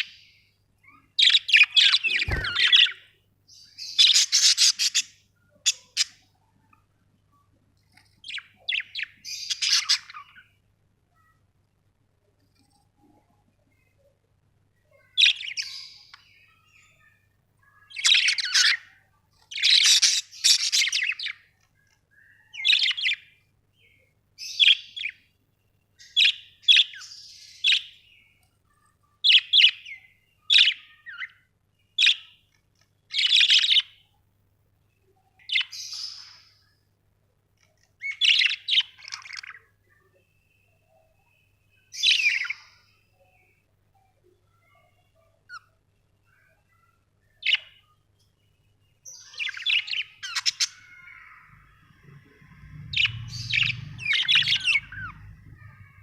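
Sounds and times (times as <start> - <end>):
budgerigars chirping: 1.0 - 3.1, 3.7 - 6.3, 8.2 - 10.4, 17.9 - 21.5, 29.2 - 31.3, 32.0 - 32.4, 33.1 - 34.0, 35.4 - 36.5, 38.0 - 39.6, 42.0 - 42.8, 49.1 - 51.2, 52.9 - 56.0.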